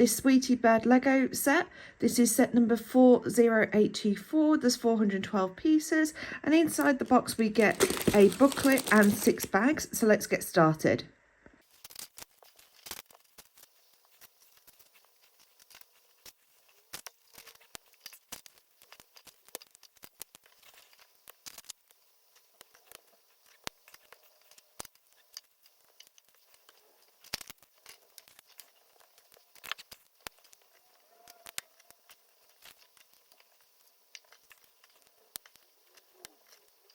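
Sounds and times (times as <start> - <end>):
plastic bags rustling: 6.6 - 9.6
plastic pieces clicking: 6.7 - 9.5.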